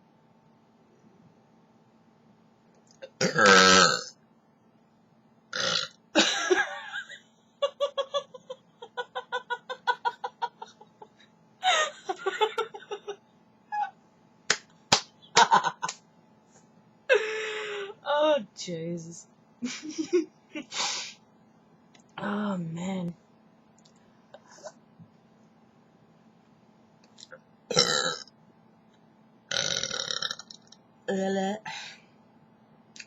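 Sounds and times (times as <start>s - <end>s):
person belching: 3.0s - 4.1s, 5.6s - 6.0s, 27.7s - 28.3s, 29.5s - 30.6s.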